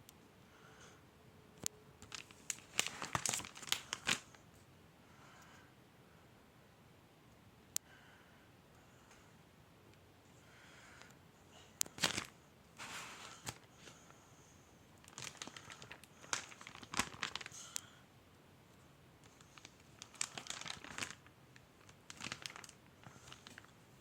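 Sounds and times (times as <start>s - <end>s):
crinkling and rustling: 1.6s - 4.6s, 11.8s - 14.1s, 15.0s - 17.9s, 19.2s - 24.0s.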